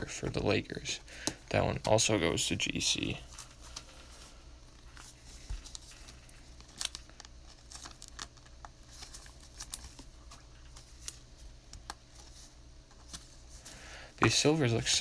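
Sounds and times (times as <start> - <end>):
low steady hum: 0.0 - 15.0
cards clicking and rustling: 4.8 - 13.8.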